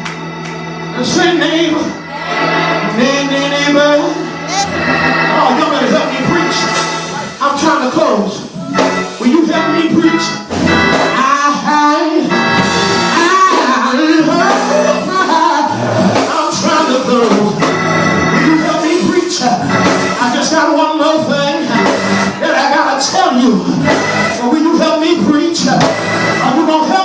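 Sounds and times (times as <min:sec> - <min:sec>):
church organ playing: 0:00.0 - 0:27.0
person singing: 0:02.1 - 0:07.4, 0:11.1 - 0:17.6.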